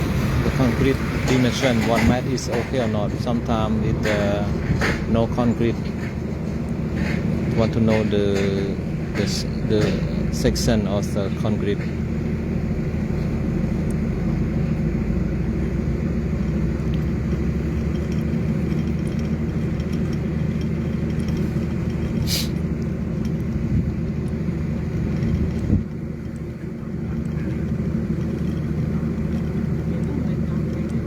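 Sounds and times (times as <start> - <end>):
low engine drone: 0.0 - 31.0.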